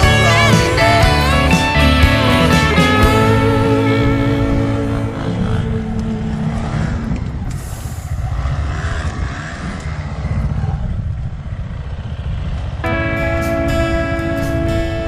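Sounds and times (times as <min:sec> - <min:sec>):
background music: 0:00.0 - 0:07.1, 0:12.8 - 0:15.0
dirt bike engine rumbling: 0:00.0 - 0:15.0.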